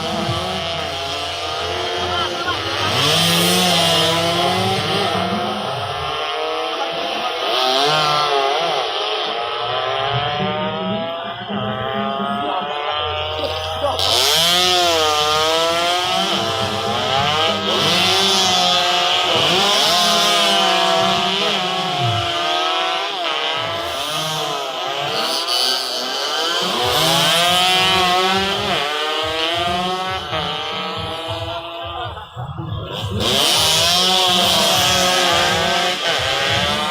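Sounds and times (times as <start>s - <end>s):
racing motorcycle engines revving: 0.0s - 36.9s.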